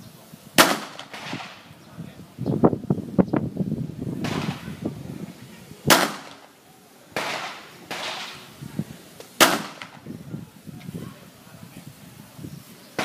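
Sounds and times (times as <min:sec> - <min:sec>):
sharp pistol shots: 0:00.6 - 0:01.6, 0:04.2 - 0:04.7, 0:05.9 - 0:06.4, 0:07.2 - 0:08.4, 0:09.4 - 0:10.0.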